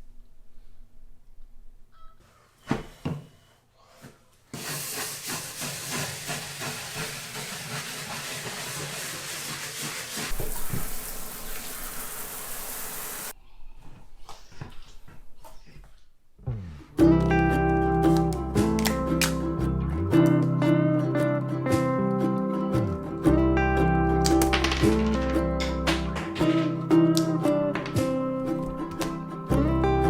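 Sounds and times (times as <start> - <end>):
shower spraying water: 4.6 - 13.4.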